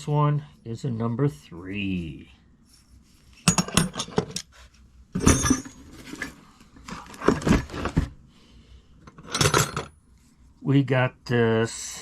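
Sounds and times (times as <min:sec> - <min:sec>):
metal wrenches clinking: 0:03.4 - 0:04.4, 0:05.2 - 0:06.3, 0:09.1 - 0:10.0.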